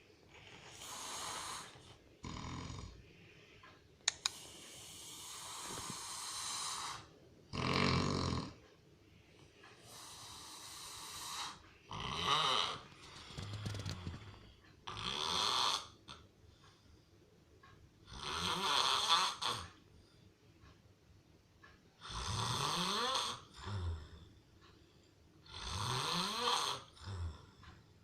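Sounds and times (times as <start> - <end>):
sharp click: 4.1 - 4.4
person snoring heavily: 4.8 - 8.6, 10.1 - 16.0, 18.1 - 19.6, 22.0 - 24.0, 25.5 - 27.5.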